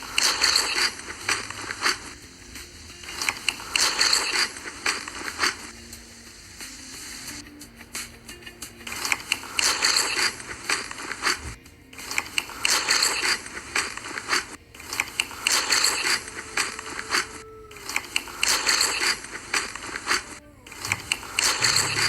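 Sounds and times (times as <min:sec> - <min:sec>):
crunchy food being chewed: 0:08.9 - 0:22.0.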